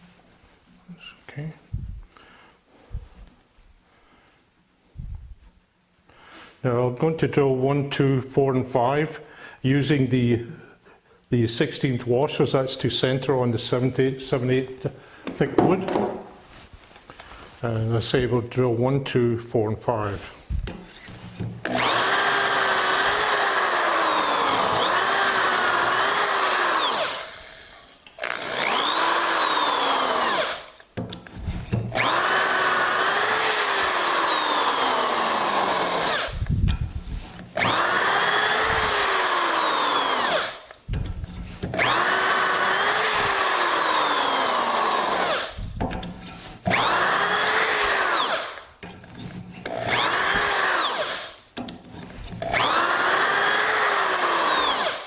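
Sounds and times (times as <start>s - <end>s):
electric drill boring into wood: 20.9s - 36.6s, 37.5s - 40.8s, 41.7s - 45.7s, 46.7s - 48.7s, 49.6s - 51.4s, 52.2s - 55.0s.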